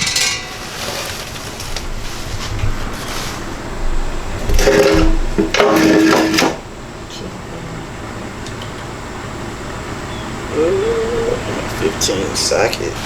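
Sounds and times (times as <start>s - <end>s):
metal parts clanking and scraping: 0.0s - 1.8s.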